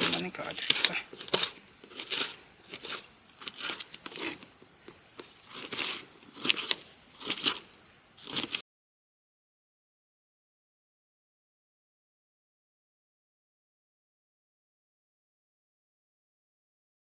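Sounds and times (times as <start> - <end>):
crickets chirring: 0.0 - 8.6.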